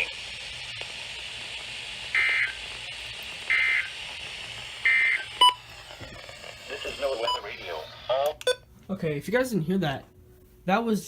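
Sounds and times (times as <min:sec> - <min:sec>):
buzzing data tone bursts: 0:02.1 - 0:02.6, 0:03.5 - 0:04.0, 0:04.8 - 0:05.7.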